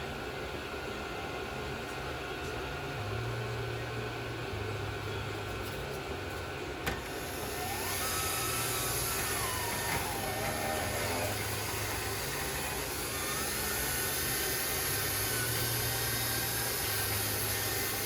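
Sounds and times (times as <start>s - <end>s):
motor hum: 6.8s - 18.0s
hiss with whine: 7.0s - 18.0s.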